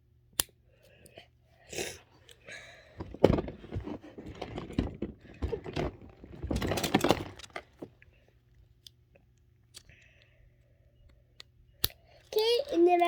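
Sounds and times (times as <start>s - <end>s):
plastic toys clattering: 2.9s - 8.0s.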